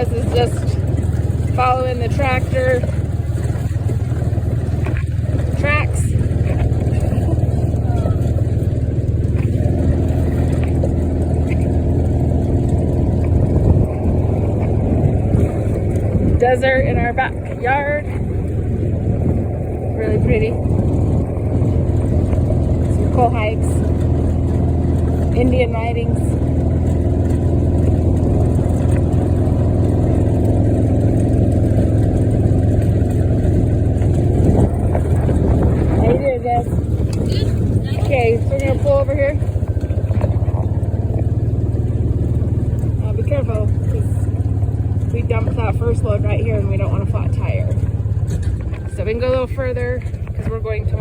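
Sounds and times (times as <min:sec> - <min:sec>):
vehicle engine running: 0:00.0 - 0:51.0.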